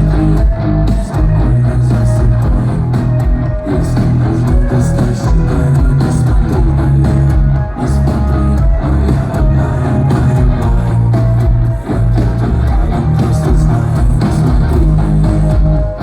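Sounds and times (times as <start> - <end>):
heavy bass line: 0.0 - 16.0
rock band playing live: 0.0 - 16.0.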